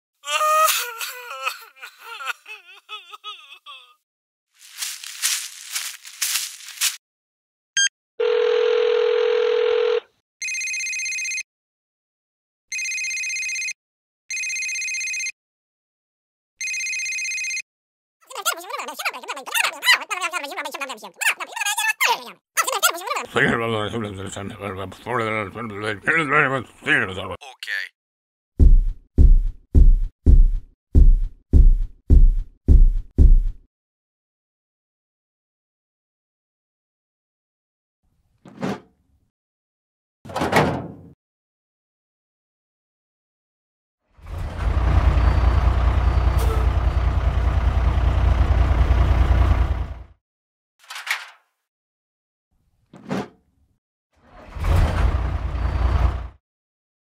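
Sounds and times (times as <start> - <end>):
electronic phone rings: 7.8 - 11.4, 12.7 - 15.3, 16.6 - 17.6
deep booming thumps: 28.6 - 33.6.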